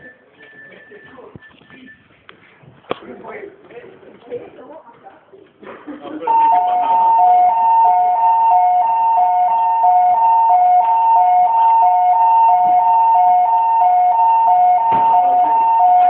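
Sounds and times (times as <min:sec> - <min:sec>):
fire alarm two-tone hi-lo signal: 0:06.3 - 0:16.0.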